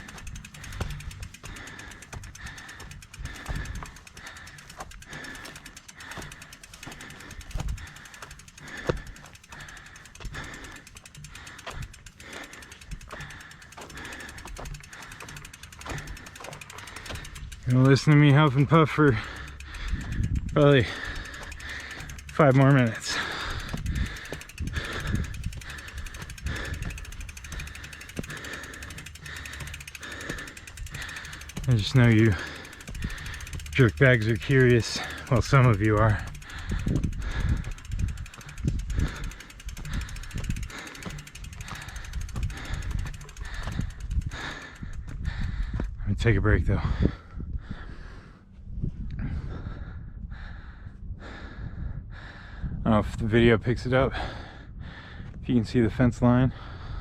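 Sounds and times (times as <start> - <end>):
heavy mouth breathing: 0.0 - 17.6, 19.0 - 46.0
bike hub ticking: 0.0 - 48.4.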